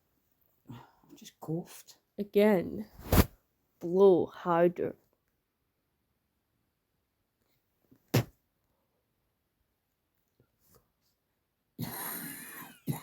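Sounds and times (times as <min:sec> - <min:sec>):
rough wheezing cough: 0:11.8 - 0:13.0.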